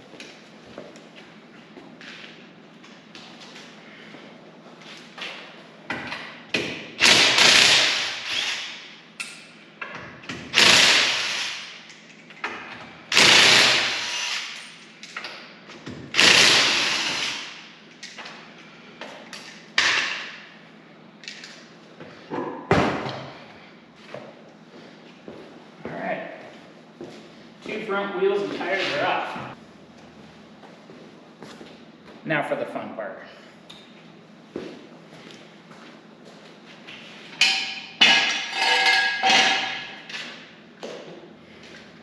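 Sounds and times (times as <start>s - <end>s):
power tool driving lug nuts: 7.0s - 8.9s, 10.3s - 11.9s, 12.5s - 14.8s, 16.1s - 17.6s
clanks of nuts and tools: 37.4s - 40.4s.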